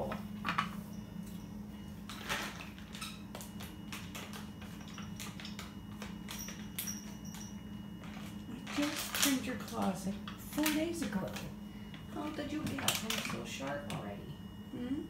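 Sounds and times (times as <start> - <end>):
steady low hum: 0.0 - 15.0
cat crunching dry treats: 2.1 - 13.9.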